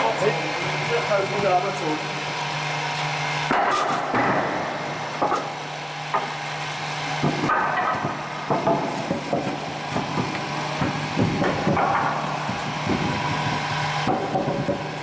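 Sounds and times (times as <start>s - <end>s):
steady low hum: 0.0s - 15.0s
knocks and clanks: 3.5s - 6.3s, 7.2s - 13.2s, 14.0s - 14.9s.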